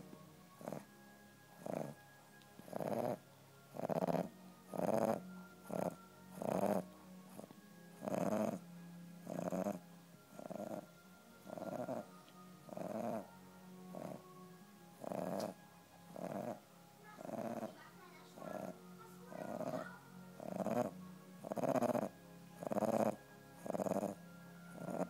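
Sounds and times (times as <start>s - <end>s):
dog snoring: 0.6s - 0.9s, 1.6s - 2.0s, 2.6s - 8.6s, 9.2s - 12.1s, 12.7s - 13.3s, 13.9s - 14.2s, 15.0s - 16.6s, 17.2s - 17.8s, 18.4s - 25.0s.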